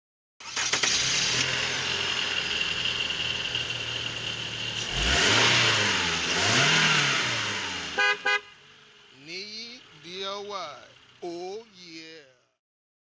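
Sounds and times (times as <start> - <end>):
car engine running and revving: 0.7 - 11.2.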